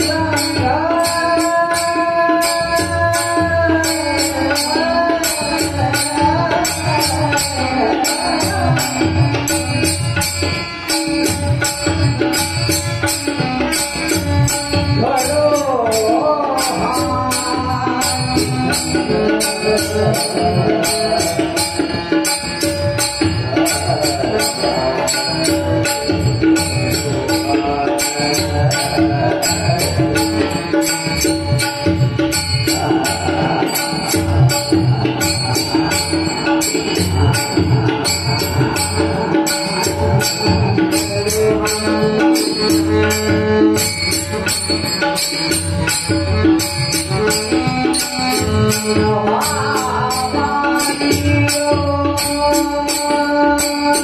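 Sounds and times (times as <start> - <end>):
man singing devotional song: 0.0 - 54.0
drum beats: 14.2 - 53.3
steady held tones: 16.4 - 51.4.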